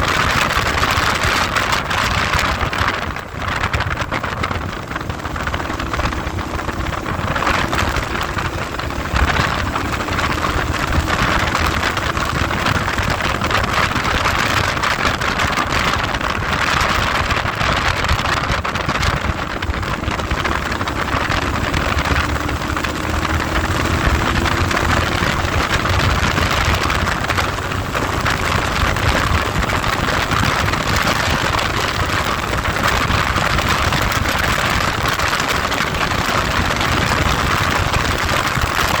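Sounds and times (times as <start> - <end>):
vehicle engine running: 0.0 - 39.0
wind buffeting microphone: 0.0 - 39.0.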